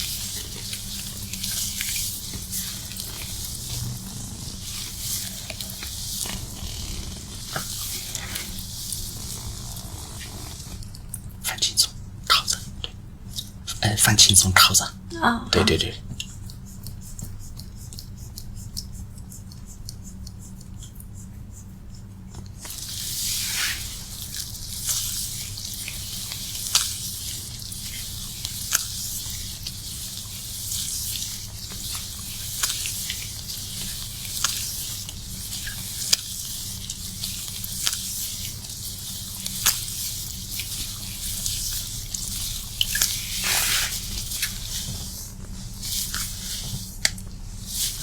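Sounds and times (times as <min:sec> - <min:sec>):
shower spraying onto wet hair: 0:00.0 - 0:10.9, 0:22.7 - 0:48.0.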